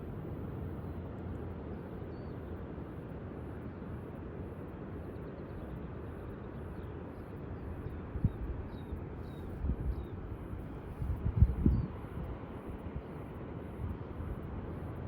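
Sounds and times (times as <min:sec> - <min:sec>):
wind rushing across microphone: 0:07.9 - 0:13.0.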